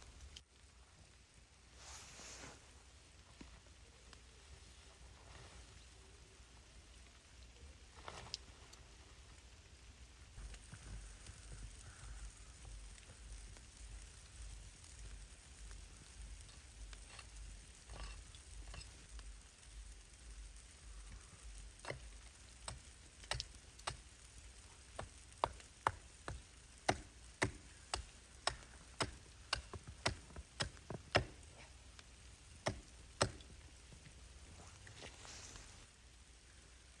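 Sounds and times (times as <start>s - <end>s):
faint low rumble: 0.0s - 23.1s
sharp irregular ticks: 20.3s - 31.4s.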